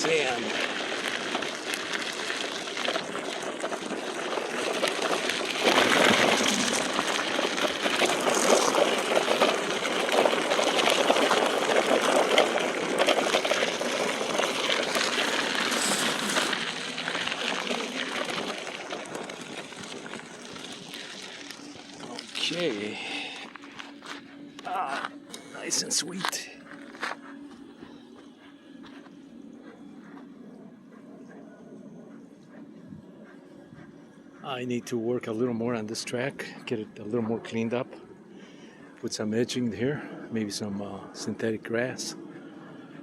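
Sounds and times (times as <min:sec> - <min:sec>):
tyres crunching over sand and dirt: 0:00.0 - 0:30.3.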